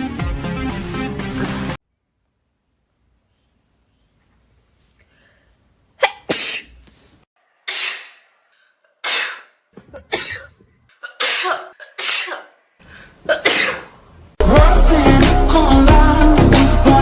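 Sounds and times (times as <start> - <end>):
woman sneezing: 6.0 - 6.8, 7.7 - 8.2, 9.0 - 10.5, 11.1 - 12.6, 13.2 - 13.9.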